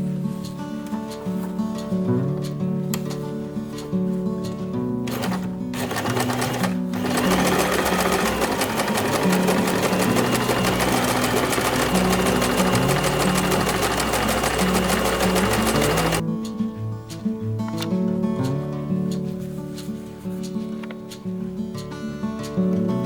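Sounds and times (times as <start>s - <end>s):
guitar music: 0.1s - 7.0s
sewing machine stitching: 5.1s - 16.2s.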